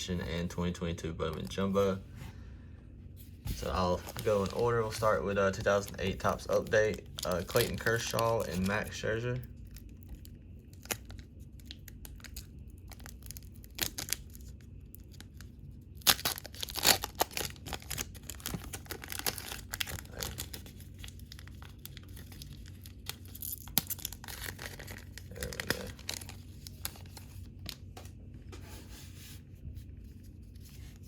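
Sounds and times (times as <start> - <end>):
card pack wrapper tearing and crinkling: 3.6 - 27.9.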